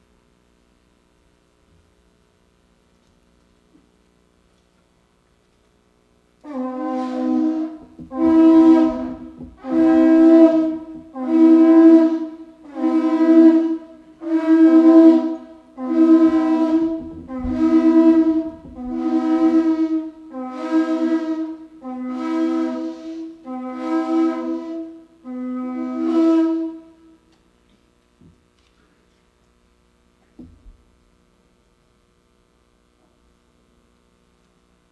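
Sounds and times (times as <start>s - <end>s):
wind instrument phrases: 6.4s - 27.3s
horn blasts: 6.4s - 27.5s
faint knocks: 6.9s - 12.4s, 14.5s - 20.1s, 30.2s - 31.0s.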